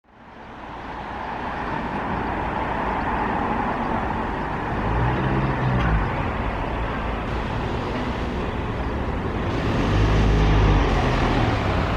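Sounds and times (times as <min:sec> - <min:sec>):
road traffic noise: 0:00.0 - 0:11.9
vehicle engine passing by: 0:07.3 - 0:11.9.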